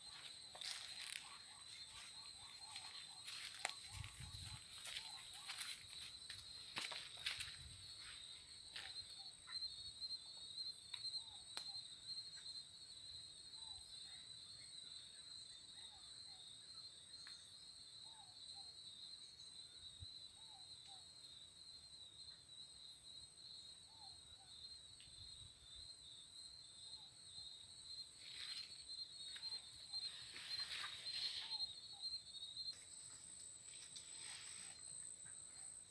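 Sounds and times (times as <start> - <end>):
soft paired chirps: 0.0 - 6.1
crickets trilling: 0.0 - 35.9.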